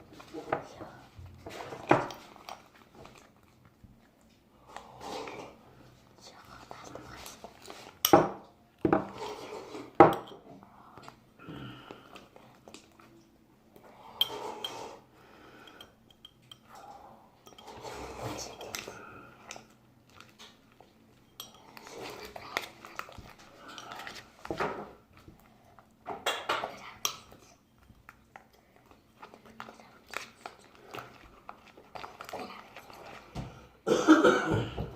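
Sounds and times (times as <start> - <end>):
utensil clinking against a dish: 8.0 - 10.4, 15.6 - 20.3, 21.1 - 24.7.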